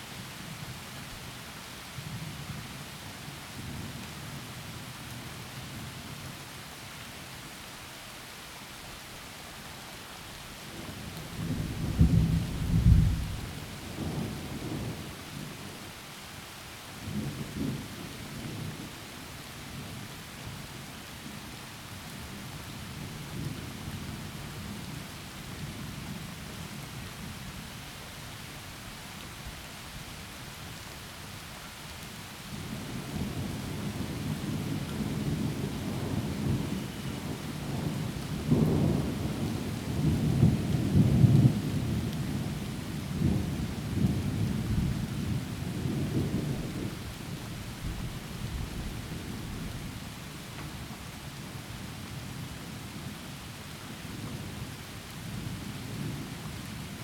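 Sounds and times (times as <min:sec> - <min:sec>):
heavy rain: 0:00.0 - 0:57.0
rolling thunder: 0:11.4 - 0:14.4.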